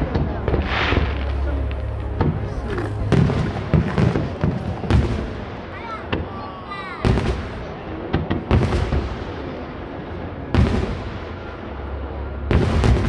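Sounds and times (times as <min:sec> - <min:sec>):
firework cracks: 0:00.0 - 0:06.4
fireworks booms with echo: 0:00.0 - 0:13.0.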